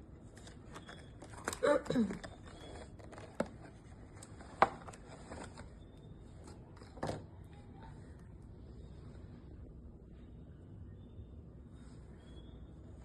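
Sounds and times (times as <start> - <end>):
faint handling noise: 0.1 - 9.6.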